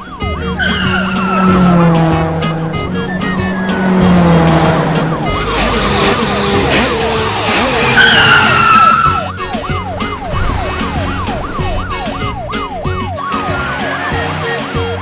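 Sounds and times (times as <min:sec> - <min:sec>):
short falling squeal: 0:00.0 - 0:13.4
siren yelping: 0:00.0 - 0:14.4
background music: 0:00.0 - 0:15.0.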